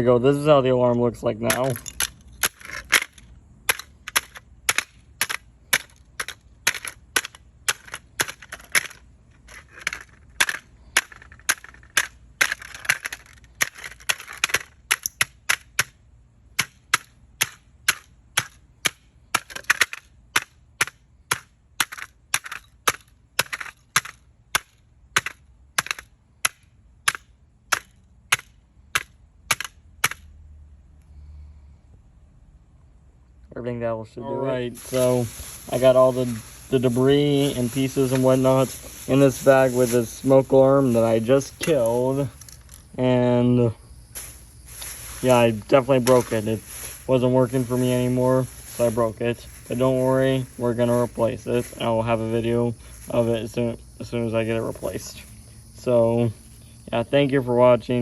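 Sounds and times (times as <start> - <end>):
plastic pieces crunching and rattling: 1.5 - 15.1, 34.8 - 42.8.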